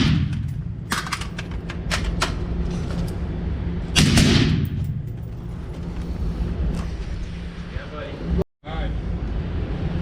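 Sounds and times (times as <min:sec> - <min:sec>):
rifle shot with echo: 0:00.0 - 0:00.4, 0:04.0 - 0:04.8.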